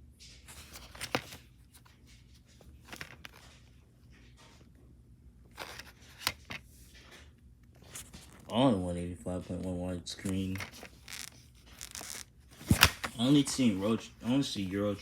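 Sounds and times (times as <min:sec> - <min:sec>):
plastic case clicking: 0:11.8 - 0:13.3.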